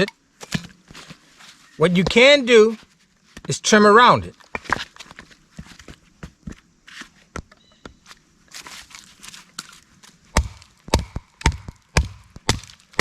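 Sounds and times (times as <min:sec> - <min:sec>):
handling and rustling: 0:00.4 - 0:03.6, 0:04.3 - 0:10.3
knife chopping into wood: 0:10.4 - 0:13.0.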